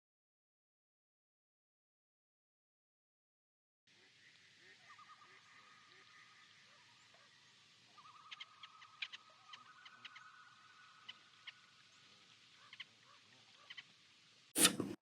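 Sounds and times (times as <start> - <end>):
bird chirps: 4.6 - 13.9.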